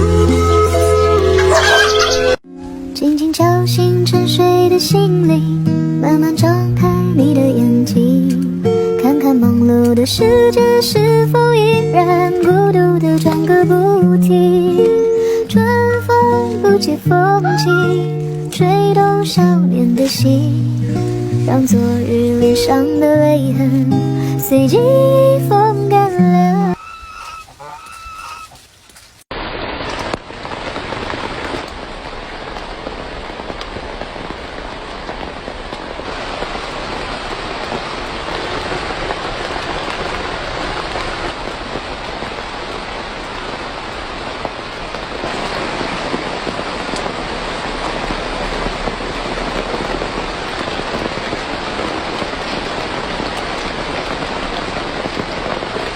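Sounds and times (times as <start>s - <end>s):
song: 0.0s - 26.8s
dense rain pattering: 2.8s - 55.9s.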